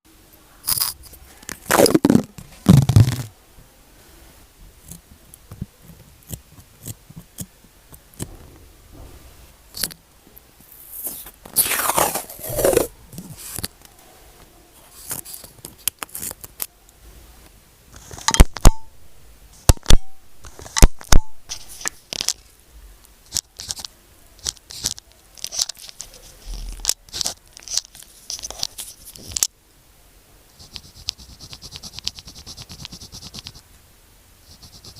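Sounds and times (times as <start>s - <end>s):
pen scratching on paper: 11.0s - 12.9s, 30.6s - 33.6s, 34.5s - 34.9s
sticky note tearing swishes: 11.0s - 12.9s.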